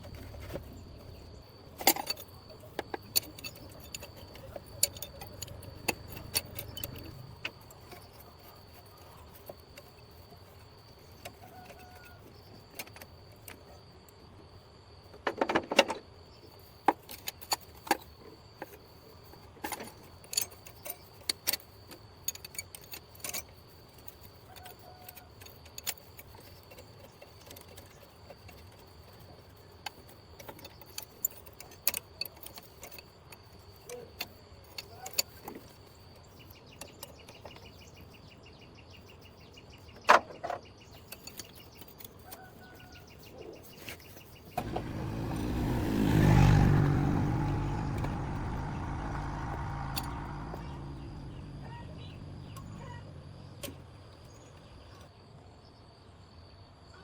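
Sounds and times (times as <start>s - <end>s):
metal tools clinking: 1.8s - 8.5s.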